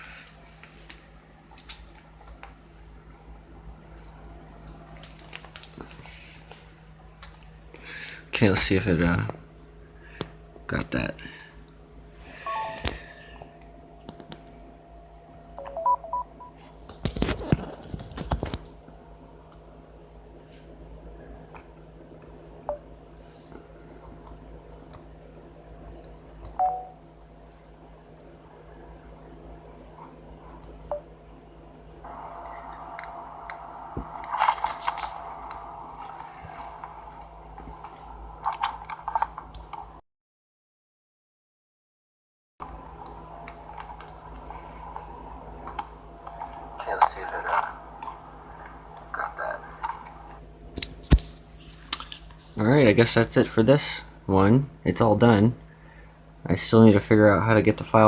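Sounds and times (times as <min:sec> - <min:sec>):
steady electrical hum: 0:00.0 - 0:40.0, 0:42.6 - 0:58.0
electronic beeps in stepped tones: 0:12.5 - 0:13.1, 0:15.6 - 0:16.6.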